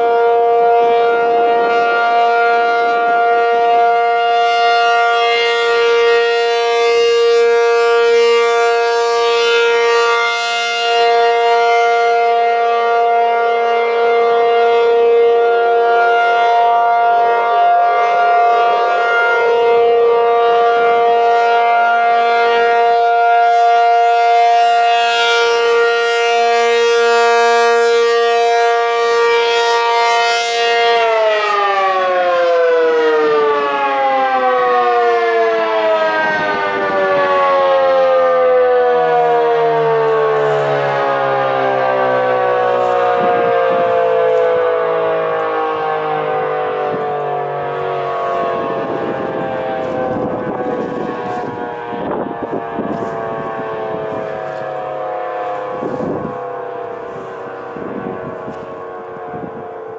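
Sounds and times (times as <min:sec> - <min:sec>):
tornado siren steady tone: 0:00.0 - 0:59.9.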